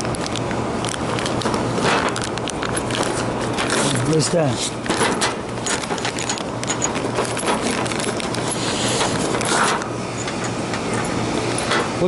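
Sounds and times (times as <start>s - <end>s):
metal tools clinking: 2.7s - 11.8s.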